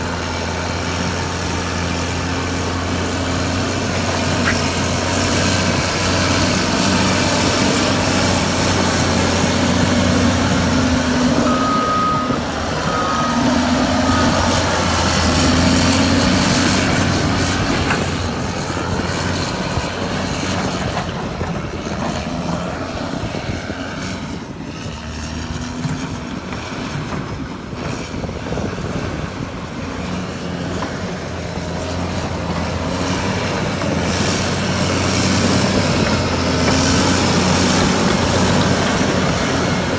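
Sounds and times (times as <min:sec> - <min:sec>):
bulldozer diesel engine working: 0:00.0 - 0:39.9
reverse alarm beeps: 0:11.4 - 0:14.6.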